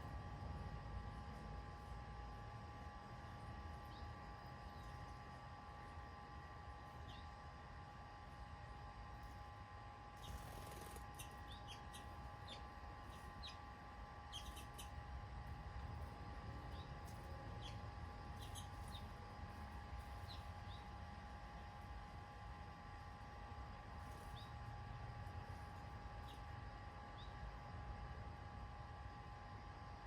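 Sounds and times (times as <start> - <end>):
faint steady hum: 0.0 - 30.0
low background rumble: 0.0 - 30.0
birds chirping faintly: 3.2 - 5.3, 6.9 - 7.4, 10.2 - 21.0, 24.1 - 24.6, 25.4 - 27.5.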